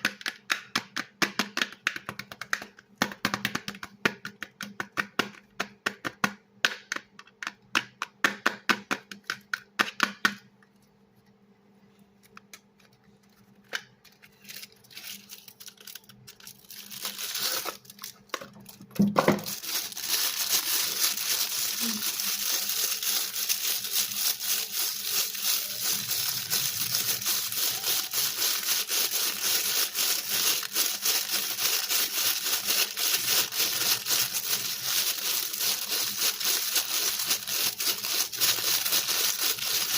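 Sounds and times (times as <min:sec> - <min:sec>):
dry soap crunching: 0:14.3 - 0:39.9.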